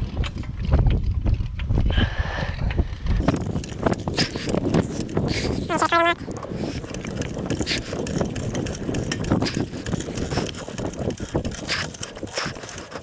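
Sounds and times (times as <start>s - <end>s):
ratchet clicking: 3.2s - 13.0s.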